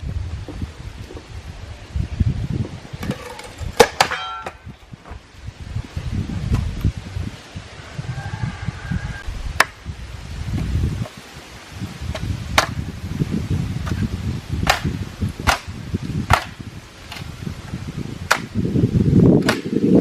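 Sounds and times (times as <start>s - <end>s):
tool striking wood: 18.3s - 18.5s.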